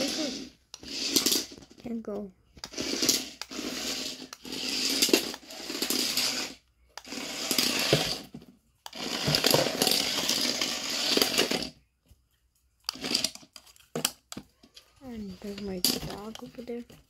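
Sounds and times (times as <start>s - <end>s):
toy motor and gears whirring: 0.0s - 2.0s, 2.6s - 11.8s, 12.8s - 13.8s.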